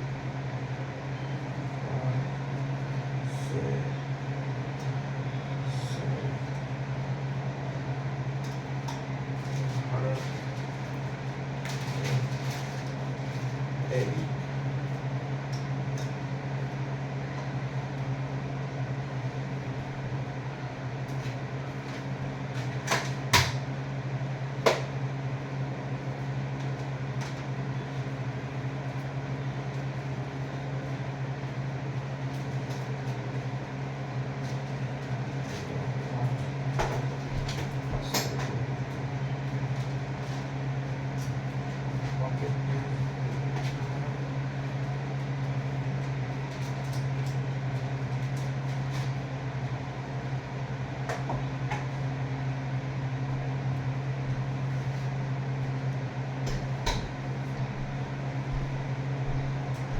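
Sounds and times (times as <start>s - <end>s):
low mechanical hum: 0.0s - 59.9s.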